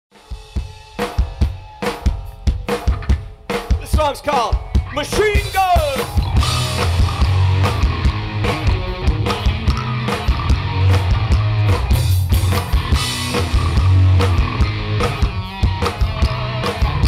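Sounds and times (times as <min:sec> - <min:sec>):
drums: 0:00.1 - 0:17.0
live rock band playing: 0:00.1 - 0:17.0
heavy bass line: 0:04.8 - 0:17.0.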